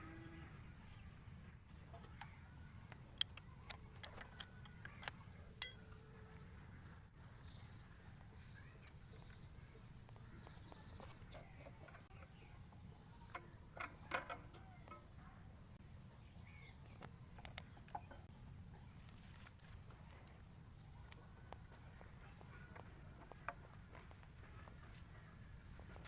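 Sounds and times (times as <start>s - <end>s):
small clicks and knocks: 13.3s - 15.3s.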